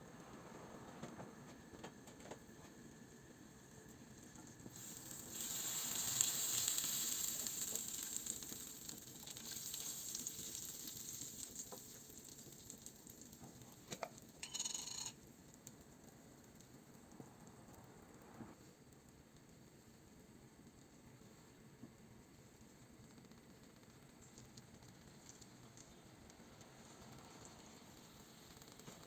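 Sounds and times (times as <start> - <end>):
sizzling hiss: 3.0 - 15.8, 24.2 - 29.0.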